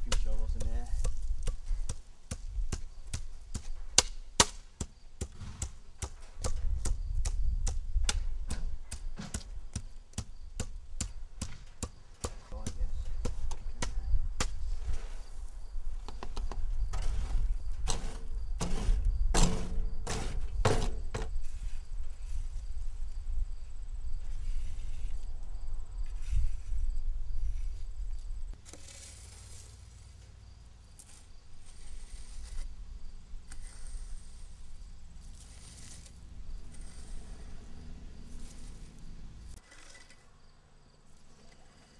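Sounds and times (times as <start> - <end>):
shovel scraping loose asphalt: 0.1 - 7.0, 14.5 - 15.5, 16.9 - 22.6, 24.2 - 25.3, 28.5 - 32.7, 33.4 - 40.4.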